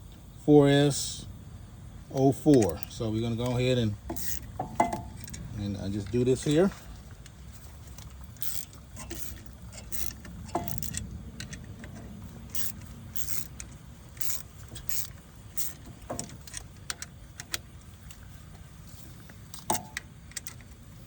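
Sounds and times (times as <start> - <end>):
low background rumble: 0.0 - 21.0
metal hand tools clinking: 2.5 - 5.5, 8.4 - 11.0.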